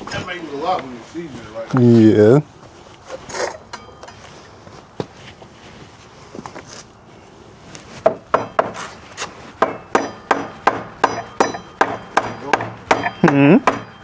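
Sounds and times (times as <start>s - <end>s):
hammer blows ringing on metal: 8.0s - 9.0s, 9.6s - 14.0s.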